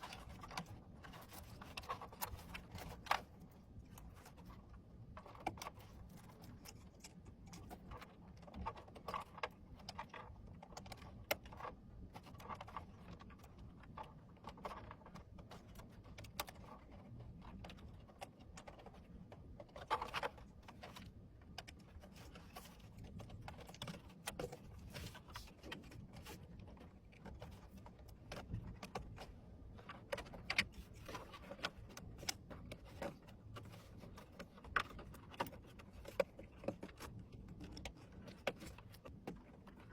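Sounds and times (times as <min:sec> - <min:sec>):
low steady hum: 0:00.0 - 0:39.9.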